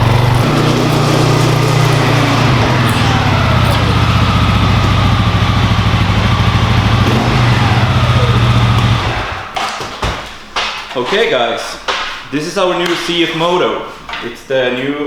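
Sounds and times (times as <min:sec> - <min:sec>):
atv engine running: 0:00.0 - 0:09.6.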